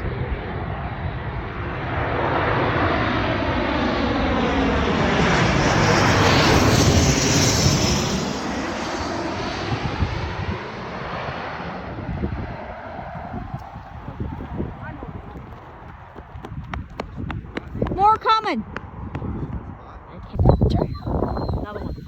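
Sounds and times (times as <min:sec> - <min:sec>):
jet airliner passing overhead: 0:00.0 - 0:22.0.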